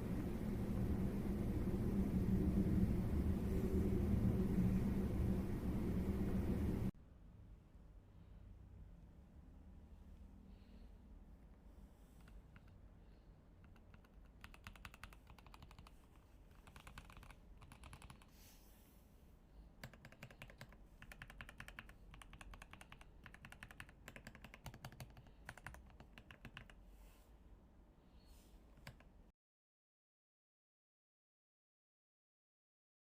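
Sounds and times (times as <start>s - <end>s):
mechanical keyboard typing: 13.6s - 18.3s, 19.8s - 26.8s, 28.8s - 29.1s.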